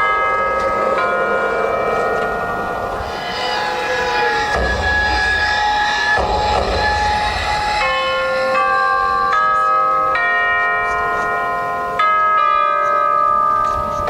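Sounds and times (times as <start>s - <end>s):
marching band playing chords: 0.5s - 9.2s.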